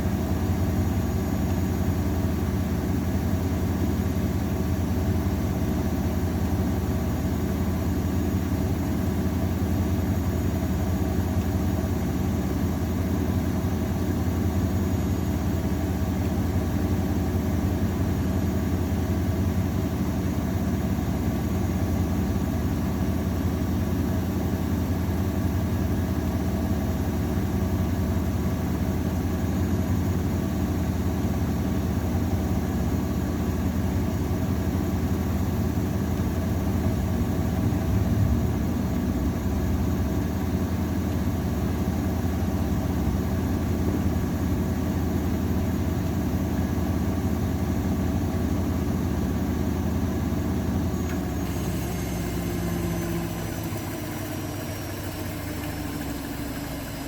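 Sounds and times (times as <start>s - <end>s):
washing machine motor humming: 0.0s - 57.0s.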